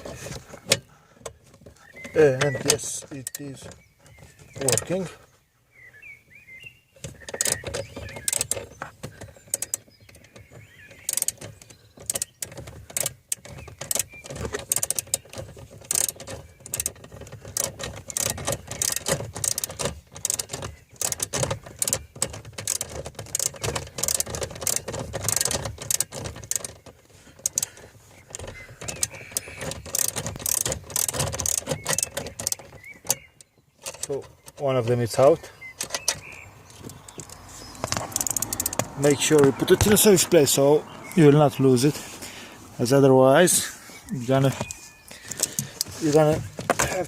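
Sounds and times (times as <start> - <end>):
socket ratchet clicking: 7.3 - 34.1, 35.8 - 40.1.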